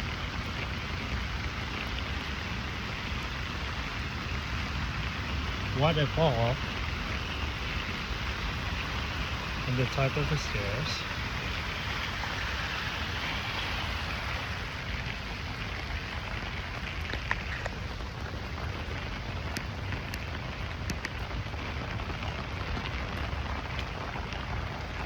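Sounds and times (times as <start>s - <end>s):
heavy rain falling: 0.0s - 25.0s.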